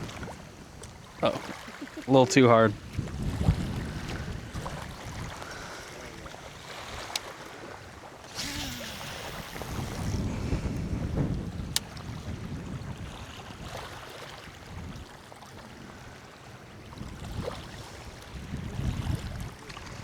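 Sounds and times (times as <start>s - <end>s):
wind buffeting microphone: 0.0s - 7.1s, 8.3s - 14.0s, 16.8s - 20.0s
sharp click: 8.3s - 10.2s.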